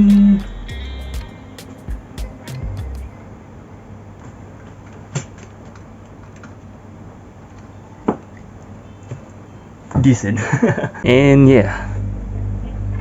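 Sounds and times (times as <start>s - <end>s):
steady low hum: 0.0s - 3.4s, 11.0s - 13.0s.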